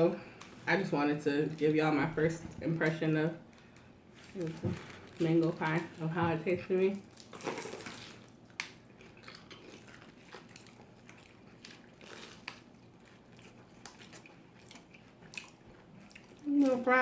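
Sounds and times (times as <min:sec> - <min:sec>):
quiet chewing: 0:07.0 - 0:17.0.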